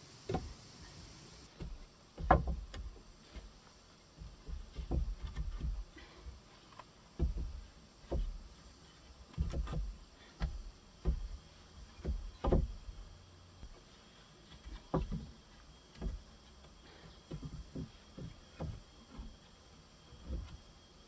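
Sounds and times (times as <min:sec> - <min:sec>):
dull knocks and thuds: 0:00.2 - 0:03.5, 0:04.1 - 0:06.1, 0:07.2 - 0:08.6, 0:09.3 - 0:13.8, 0:14.5 - 0:19.5, 0:20.1 - 0:20.7.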